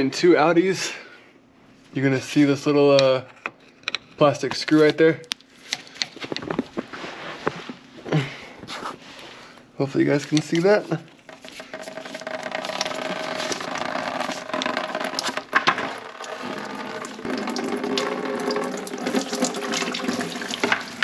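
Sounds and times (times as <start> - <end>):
liquid gushing and splashing: 16.1 - 21.0.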